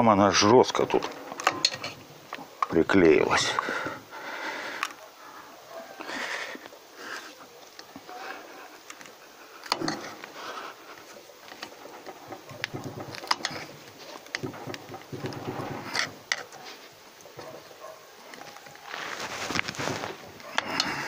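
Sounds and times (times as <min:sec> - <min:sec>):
tool scraping and clicking on metal: 0:00.8 - 0:02.8, 0:11.4 - 0:16.6.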